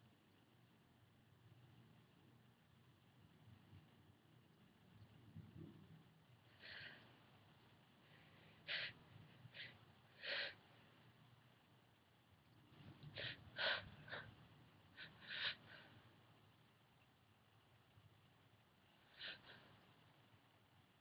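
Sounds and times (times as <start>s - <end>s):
woman gasping breaths: 8.1s - 10.7s, 13.1s - 14.4s, 15.0s - 16.0s.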